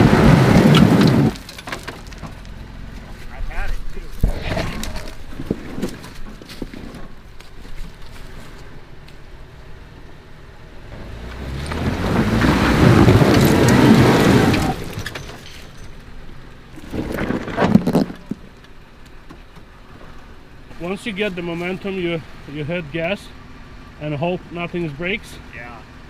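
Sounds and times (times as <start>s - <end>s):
tires spinning and scrabbling: 0.0s - 26.0s
engine revving hard: 10.8s - 15.0s.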